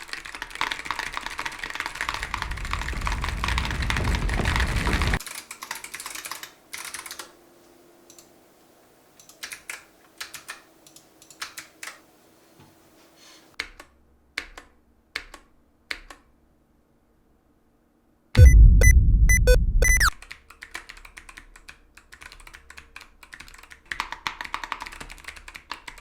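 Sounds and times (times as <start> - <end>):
mechanical keyboard typing: 0.0 - 7.3, 9.2 - 12.0, 19.9 - 26.0.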